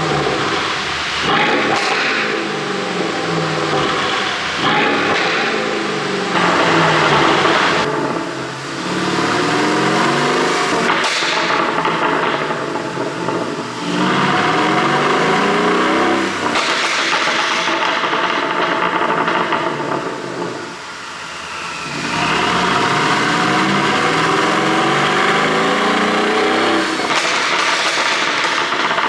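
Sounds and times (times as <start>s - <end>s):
car engine revving: 0.0s - 29.0s
exhaust pops and crackles: 10.7s - 14.2s, 16.4s - 20.6s, 25.5s - 29.0s.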